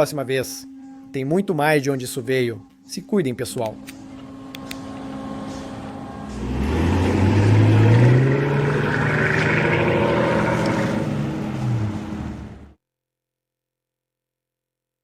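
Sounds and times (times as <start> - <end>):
vehicle engine revving: 4.3 - 12.8.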